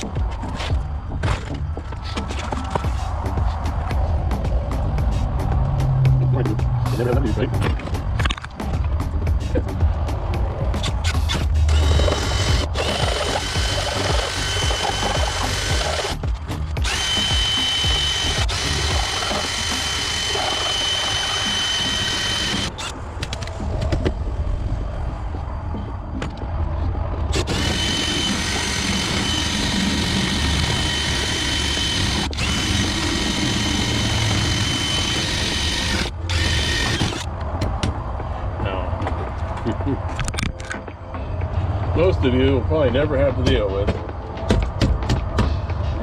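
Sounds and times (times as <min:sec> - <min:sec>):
hole saw cutting through door: 0:10.8 - 0:16.2, 0:16.8 - 0:22.9, 0:27.3 - 0:37.3
power drill whining: 0:11.3 - 0:16.2, 0:16.8 - 0:22.9, 0:27.3 - 0:37.3.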